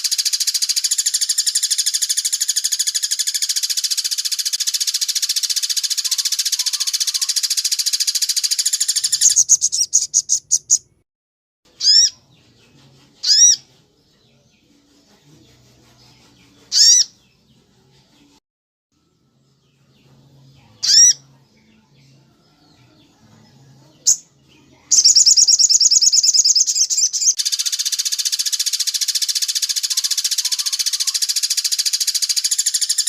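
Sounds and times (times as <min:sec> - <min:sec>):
songbird trilling: 0:00.0 - 0:11.0, 0:11.8 - 0:12.2, 0:13.2 - 0:13.6, 0:16.7 - 0:17.1, 0:20.8 - 0:21.2, 0:24.9 - 0:33.0.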